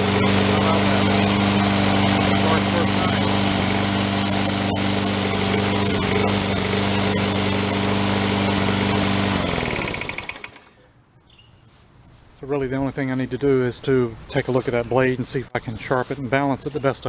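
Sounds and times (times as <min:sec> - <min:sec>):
lawn mower engine running: 0:00.0 - 0:10.9.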